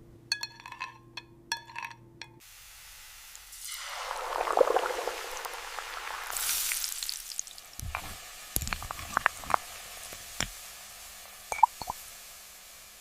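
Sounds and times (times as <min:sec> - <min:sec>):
clinks of utensils on glass: 0:00.3 - 0:02.4
sizzling hiss: 0:02.4 - 0:13.0.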